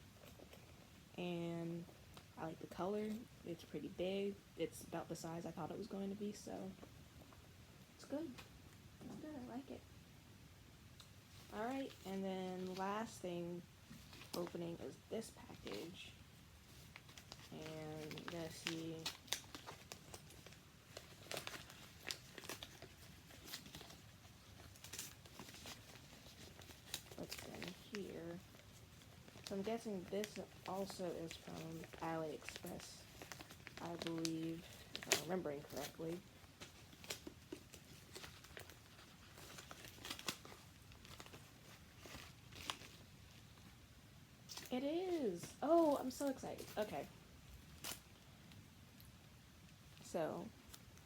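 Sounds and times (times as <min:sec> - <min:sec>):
package wrapping crinkling: 0:16.6 - 0:43.7
wrapping tearing: 0:16.6 - 0:43.7, 0:44.5 - 0:48.2.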